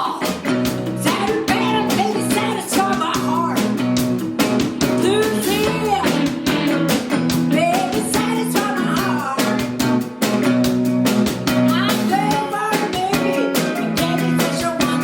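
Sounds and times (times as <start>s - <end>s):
person singing: 0.0s - 3.8s, 4.8s - 6.6s, 7.5s - 9.7s, 11.7s - 15.0s
rock guitar with steady beat: 0.0s - 15.0s.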